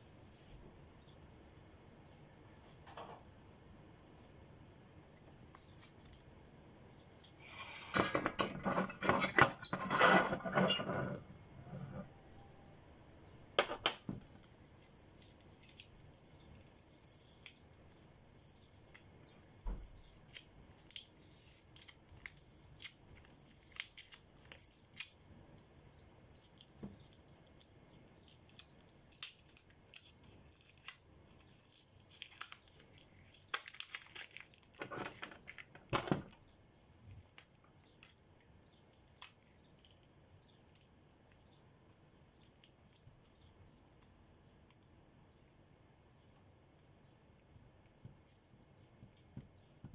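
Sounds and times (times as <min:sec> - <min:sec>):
tape tearing and crinkling: 0:19.9 - 0:25.2, 0:28.5 - 0:35.7.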